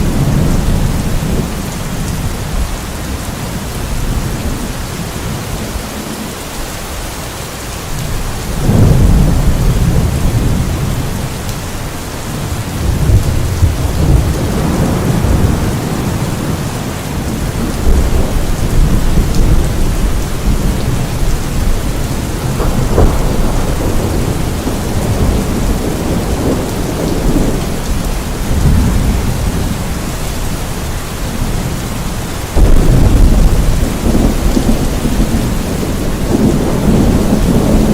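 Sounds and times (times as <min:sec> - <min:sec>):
rolling thunder: 0:00.0 - 0:06.2, 0:08.0 - 0:37.9
rain hissing: 0:00.0 - 0:37.9
thunder crack: 0:08.6 - 0:11.3, 0:17.3 - 0:27.8, 0:32.6 - 0:37.9.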